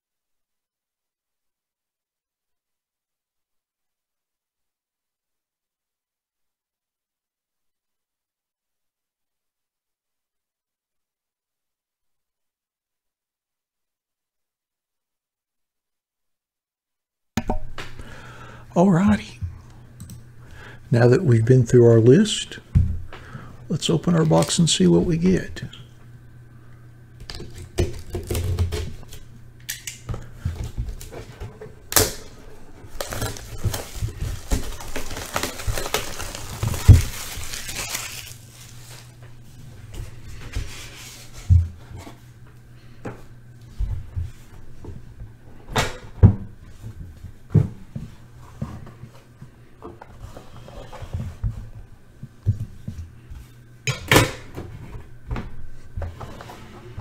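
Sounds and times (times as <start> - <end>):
rustling and tearing: 32.9 - 39.2.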